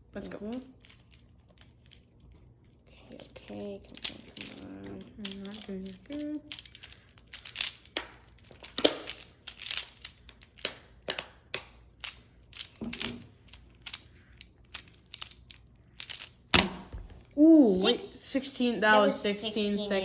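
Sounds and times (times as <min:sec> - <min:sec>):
plastic puzzle clicking: 0:03.2 - 0:16.5.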